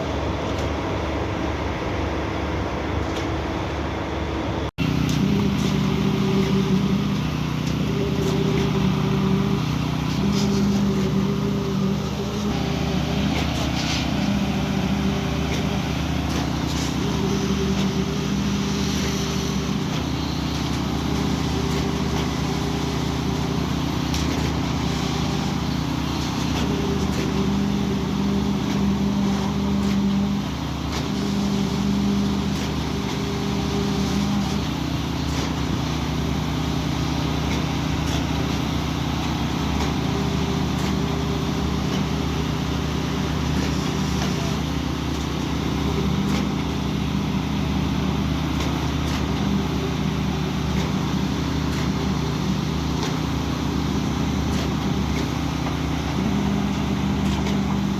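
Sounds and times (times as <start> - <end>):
diesel engine running: 0.0 - 57.9
deep hum: 4.8 - 34.8.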